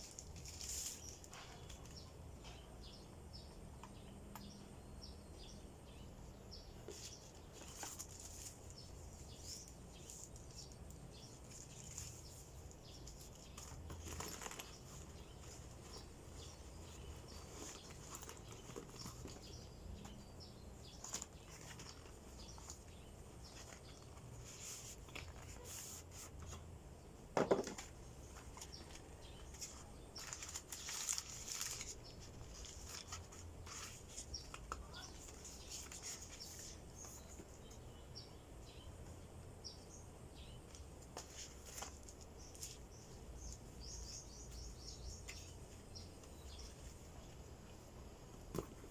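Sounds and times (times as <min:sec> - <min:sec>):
packaging rustling and crinkling: 0:00.0 - 0:02.0, 0:06.9 - 0:19.6, 0:20.9 - 0:26.5, 0:27.6 - 0:37.2.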